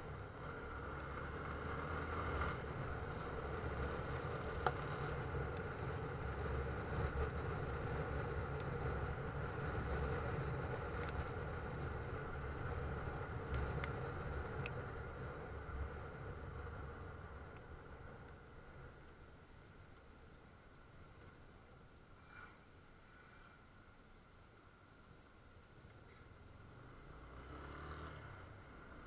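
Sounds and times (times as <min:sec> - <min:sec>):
vehicle engine and road noise: 0:00.0 - 0:29.0
faint sharp ticks: 0:10.9 - 0:11.2.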